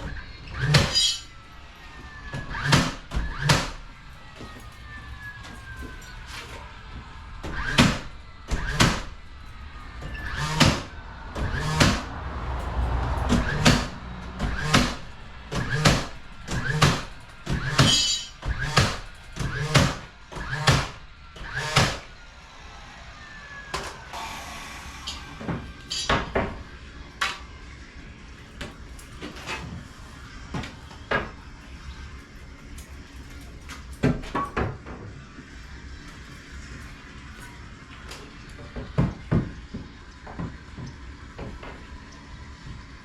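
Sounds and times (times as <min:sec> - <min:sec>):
sharp knocks: 0:13.3 - 0:21.0.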